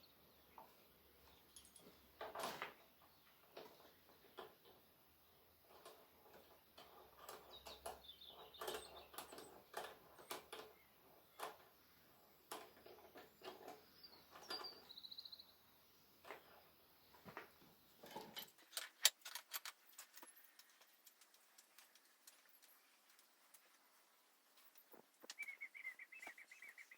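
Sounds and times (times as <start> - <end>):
wrenches clicking and knocking: 5.6 - 14.8, 18.0 - 23.8
bird chirp: 6.4 - 18.4, 20.2 - 26.9.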